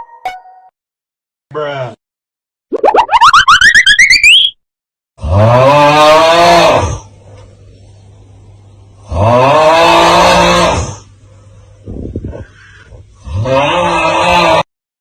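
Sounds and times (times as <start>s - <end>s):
fluttering tone rising in pitch: 2.7s - 4.6s.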